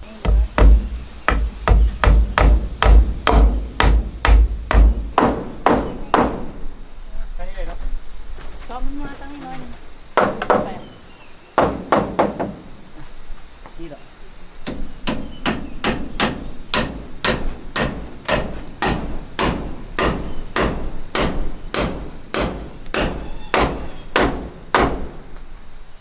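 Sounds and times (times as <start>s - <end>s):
hammer striking wood: 0.0s - 6.7s, 10.2s - 10.9s, 11.6s - 12.7s, 14.6s - 25.4s.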